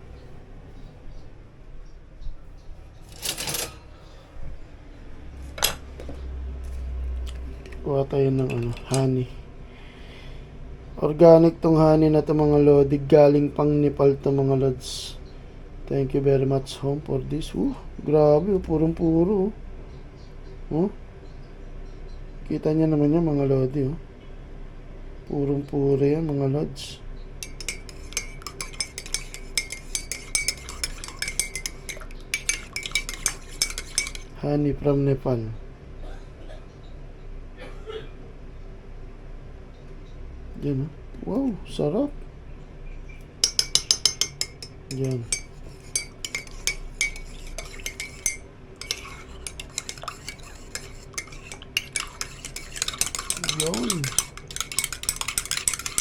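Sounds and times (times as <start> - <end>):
spoon clinking against glass: 27.4 - 34.4, 43.4 - 56.0.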